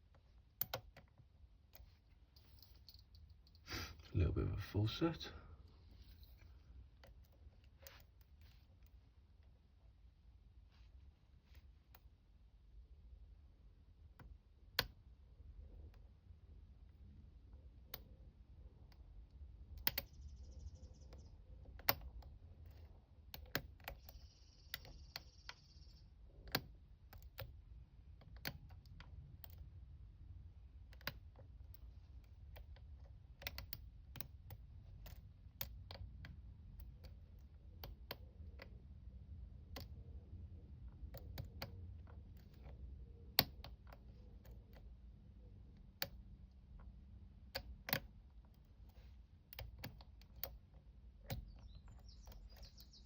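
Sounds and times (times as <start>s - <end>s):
lock pick clicking on pins: 0.6s - 3.7s, 18.8s - 20.2s, 21.1s - 25.3s, 26.4s - 29.8s, 30.8s - 38.8s, 40.9s - 44.9s, 45.8s - 53.0s.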